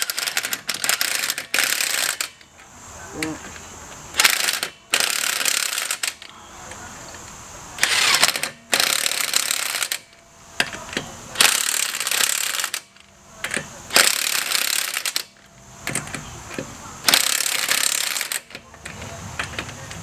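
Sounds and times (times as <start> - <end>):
impact wrench hammering: 0.0 - 2.5, 4.2 - 6.2, 7.8 - 18.6.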